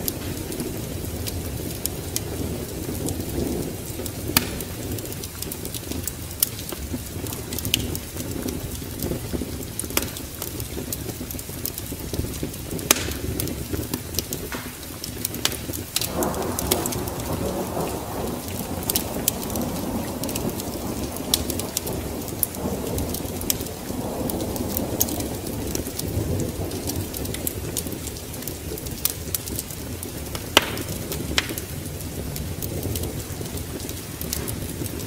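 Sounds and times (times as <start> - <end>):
fire pops: 0.0 - 35.0
rain: 0.0 - 35.0
thunder rumbling: 0.0 - 35.0
wood fire crackling: 0.0 - 35.0.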